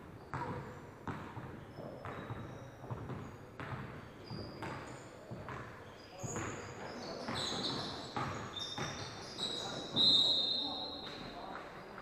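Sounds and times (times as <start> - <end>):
sneaker squeaks: 0.0 - 12.0
basketball bouncing on wooden floor: 0.3 - 9.2.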